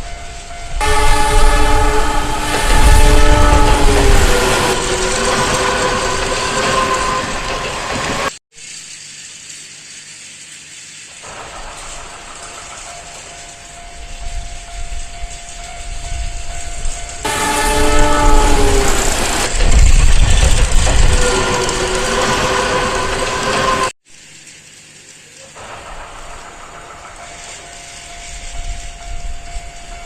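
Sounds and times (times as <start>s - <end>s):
train running noise: 0.0s - 8.4s, 10.8s - 23.9s, 25.4s - 30.0s
train horn: 0.7s - 8.3s, 16.1s - 23.9s.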